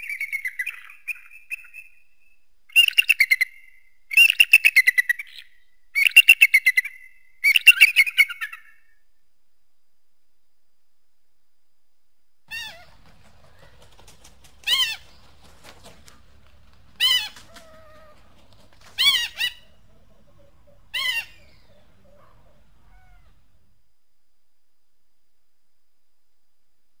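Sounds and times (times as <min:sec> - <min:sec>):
eagle squealing calls: 0:12.5 - 0:16.2, 0:16.8 - 0:23.6
faint short bird calls: 0:12.5 - 0:23.8.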